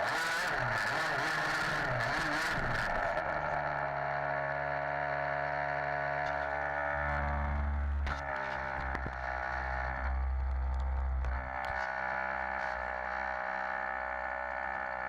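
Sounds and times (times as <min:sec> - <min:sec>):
two-stroke engine revving: 0:00.0 - 0:10.0, 0:11.3 - 0:15.0.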